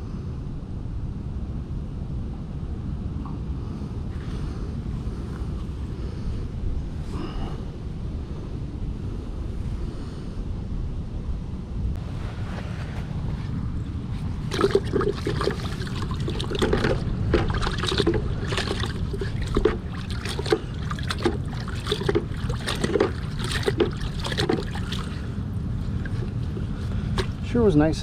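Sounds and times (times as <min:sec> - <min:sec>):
wind rumble on microphone: 0:00.0 - 0:28.0
river water splashing: 0:14.2 - 0:27.5.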